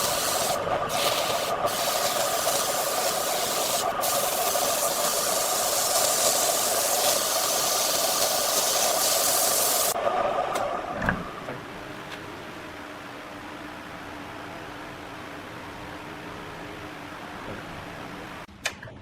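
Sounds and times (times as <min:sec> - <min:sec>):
power tool hissing: 0:00.0 - 0:10.0.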